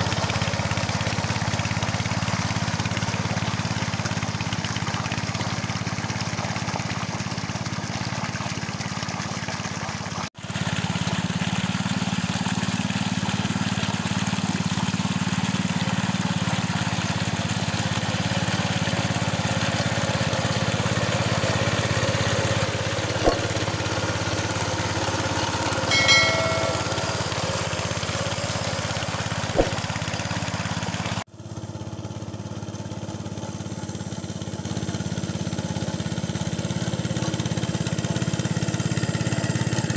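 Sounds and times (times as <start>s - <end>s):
small tractor engine running: 0.0s - 39.9s
short pitched sound: 25.9s - 27.2s.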